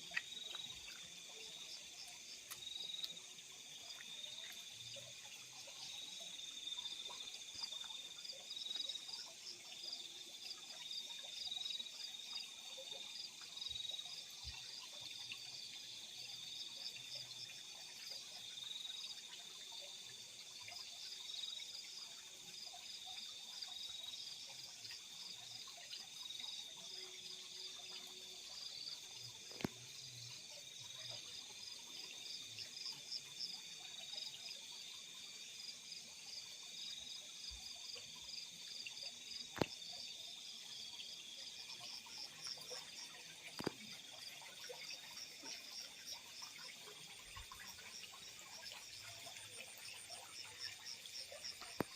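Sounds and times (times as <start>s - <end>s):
crickets trilling and chirping: 0.0s - 51.9s.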